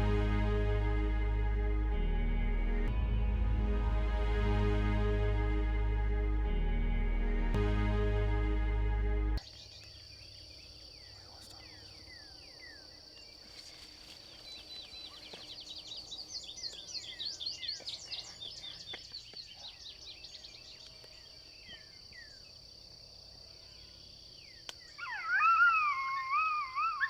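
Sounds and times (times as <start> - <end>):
insects droning: 9.4 - 27.0
loud wavering howl: 25.0 - 27.0.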